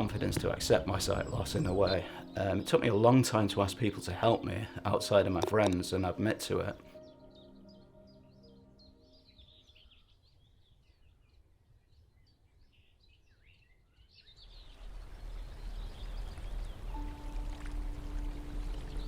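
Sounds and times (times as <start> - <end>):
birds singing faintly: 0.0 - 19.0
held music notes: 16.7 - 19.0.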